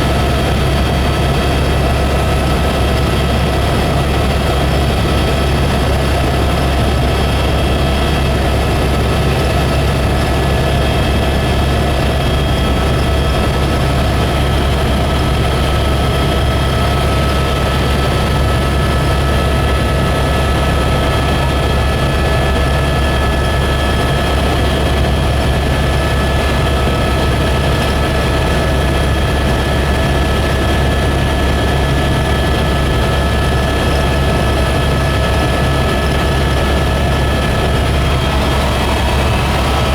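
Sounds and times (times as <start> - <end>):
helicopter engine and rotor drone: 0.0 - 39.9
steady whining tones: 35.7 - 39.9.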